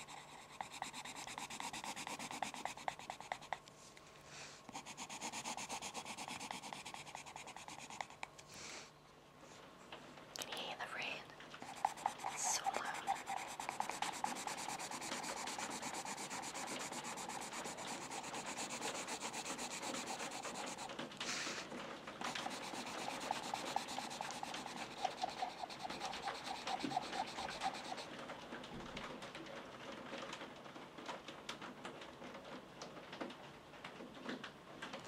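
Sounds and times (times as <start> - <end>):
pencil scratching on paper: 0.0 - 3.6, 4.7 - 8.3, 11.6 - 21.6, 22.2 - 28.1.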